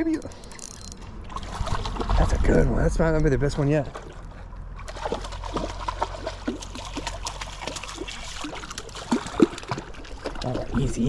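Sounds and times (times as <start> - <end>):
water splashing and plopping: 4.9 - 11.0.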